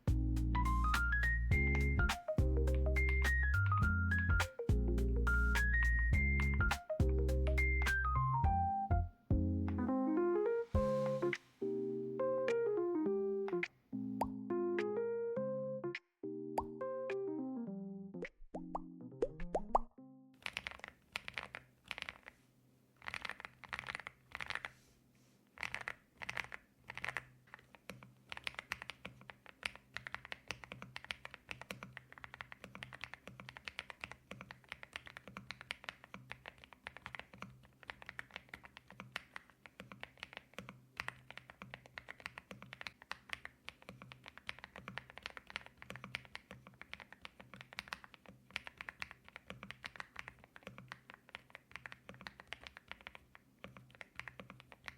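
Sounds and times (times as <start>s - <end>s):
mechanical keyboard typing: 20.4s - 22.4s, 23.0s - 24.7s, 25.6s - 54.9s.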